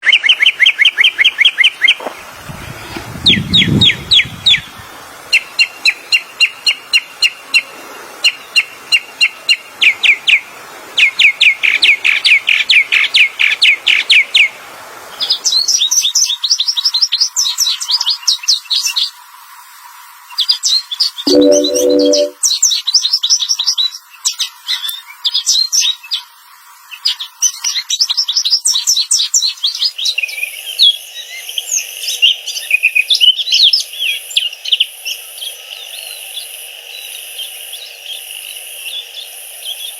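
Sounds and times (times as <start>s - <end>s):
songbird chirping: 21.3s - 22.4s.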